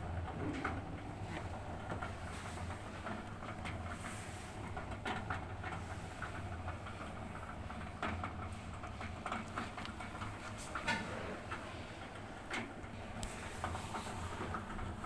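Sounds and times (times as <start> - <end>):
drain pump humming: 0.0 - 15.0.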